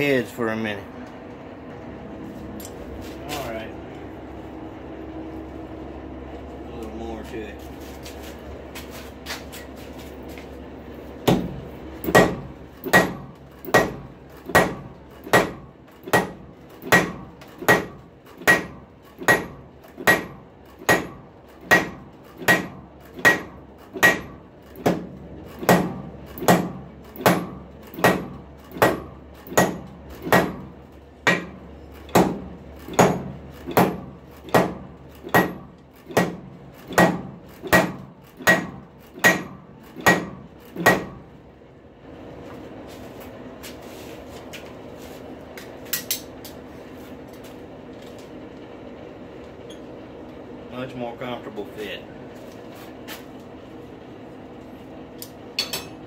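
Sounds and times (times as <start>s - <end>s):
hammer striking hot metal: 11.2s - 41.2s, 55.6s - 56.0s.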